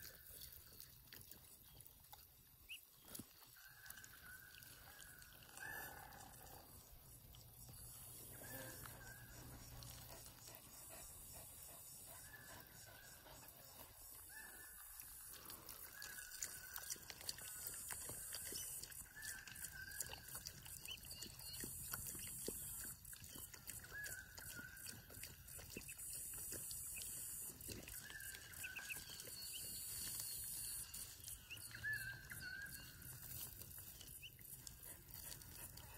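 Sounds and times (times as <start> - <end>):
ducklings and hens chirping: 18.8 - 26.0, 26.9 - 30.2.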